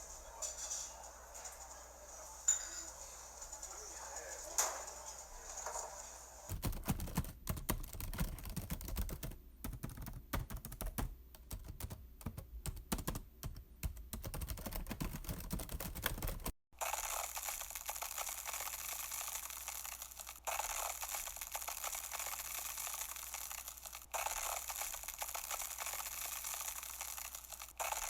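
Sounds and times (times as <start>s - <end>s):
typing on computer keyboard: 6.5s - 28.0s
steady hiss: 16.8s - 28.0s.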